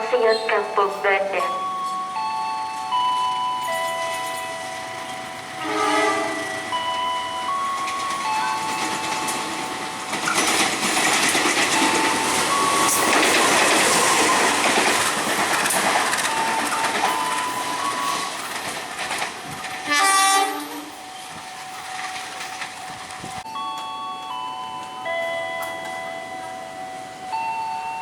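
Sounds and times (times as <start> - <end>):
train wheels clattering: 1.5 - 23.5
train horn blast: 5.6 - 6.6, 19.8 - 21.0.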